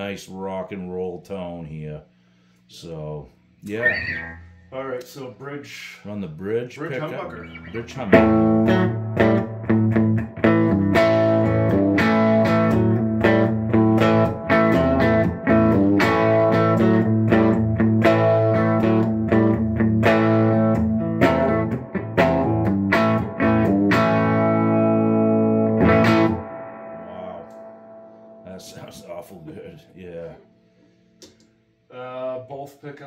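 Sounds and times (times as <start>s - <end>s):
distorted electric guitar: 3.7s - 4.7s, 7.0s - 30.6s.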